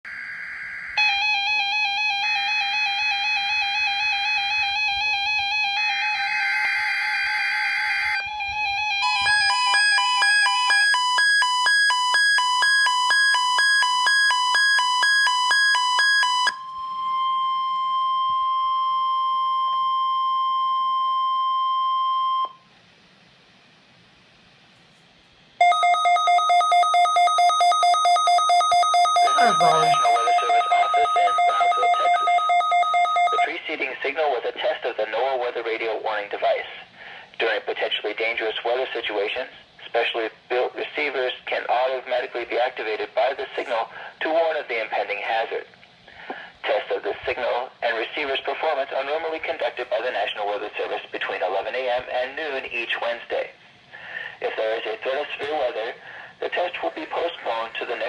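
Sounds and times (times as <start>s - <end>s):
warbling pulsing electronic beeps: 0.1s - 2.6s, 26.8s - 33.5s
steady single-pitch alert tone: 0.1s - 22.6s, 25.6s - 33.5s
rapid two-pitch beeps: 25.6s - 33.5s.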